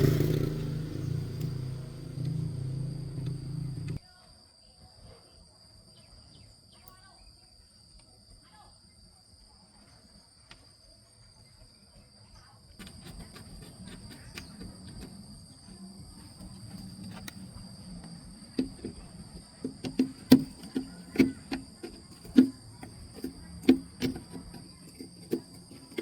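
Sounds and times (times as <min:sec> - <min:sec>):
low hum: 0:00.0 - 0:04.0
insects trilling: 0:11.4 - 0:26.0.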